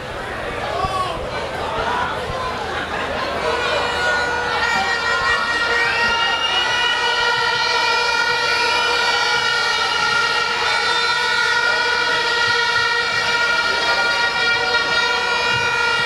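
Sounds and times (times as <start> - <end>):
loud many-toned wail: 3.2 - 16.0.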